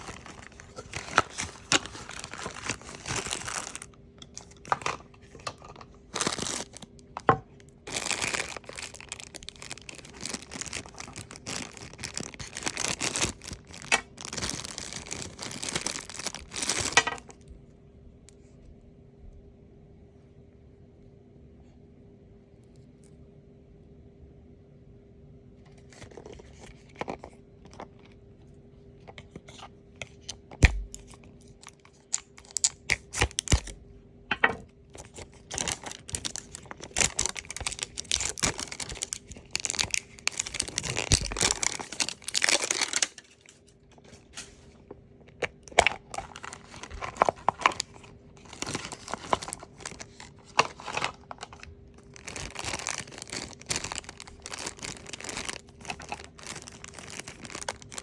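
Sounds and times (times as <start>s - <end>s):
packaging crinkling and tearing: 0.0s - 17.4s, 25.8s - 28.1s, 30.2s - 33.8s, 34.4s - 58.0s.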